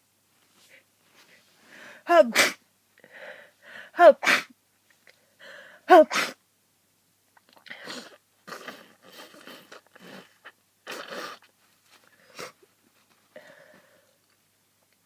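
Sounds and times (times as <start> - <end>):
person breathing noisily and sniffing: 3.0 - 4.0, 7.7 - 12.7, 13.3 - 14.2.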